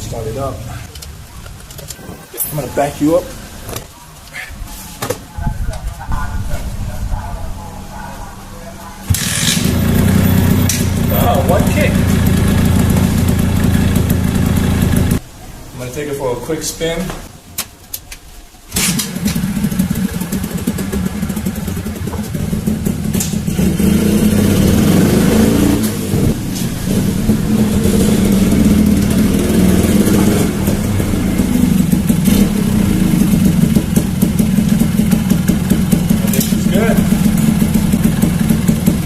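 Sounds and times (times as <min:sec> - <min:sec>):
two-stroke motorcycle engine revving: 0:09.0 - 0:15.2, 0:18.7 - 0:39.0.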